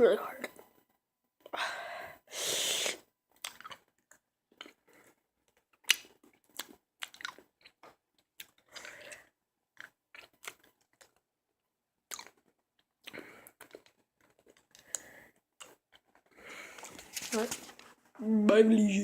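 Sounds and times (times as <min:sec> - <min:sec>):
chewing hard candy: 0:03.4 - 0:11.2, 0:12.0 - 0:17.5.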